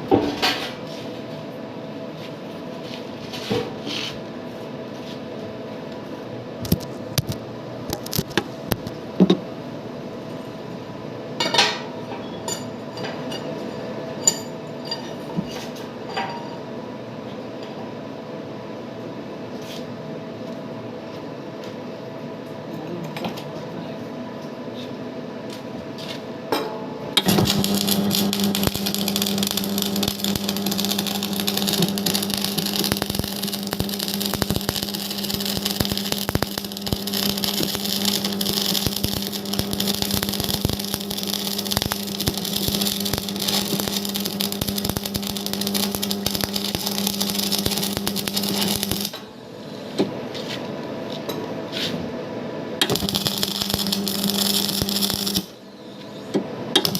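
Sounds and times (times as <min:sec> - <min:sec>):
machine hum: 0:27.0 - 0:49.8, 0:52.4 - 0:56.9
electric arc welding crackling: 0:27.2 - 0:49.2, 0:52.8 - 0:55.6.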